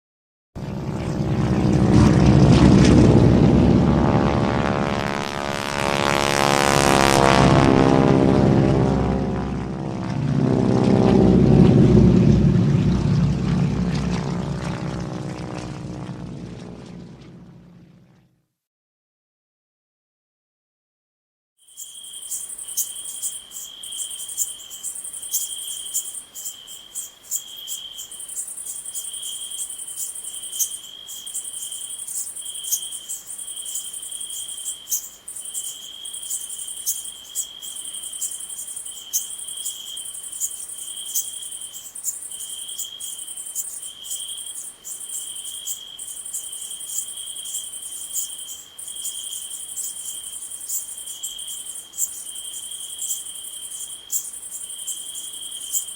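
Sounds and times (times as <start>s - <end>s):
high-pitched insect trill: 21.6s - 55.9s
low insect chirping: 21.6s - 55.9s
sharp insect ticks: 21.6s - 55.9s.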